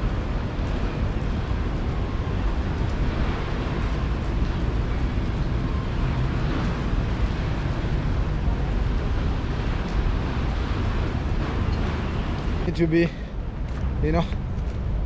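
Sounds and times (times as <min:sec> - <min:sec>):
street noise: 0:00.0 - 0:15.0
wind buffeting microphone: 0:00.0 - 0:15.0.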